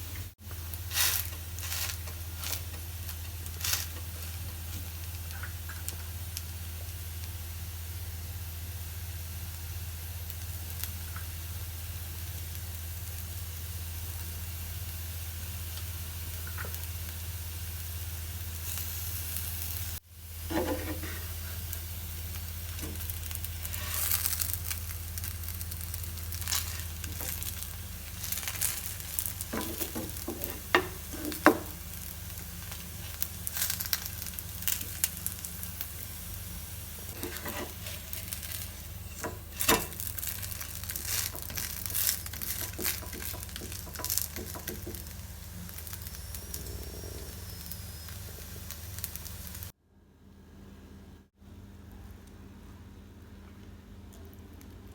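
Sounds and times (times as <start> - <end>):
pancake sizzling in oil: 0.4 - 49.8
utensil scraping and tapping pan: 20.5 - 21.3, 37.2 - 38.6, 41.1 - 45.1
low hum: 20.6 - 54.9.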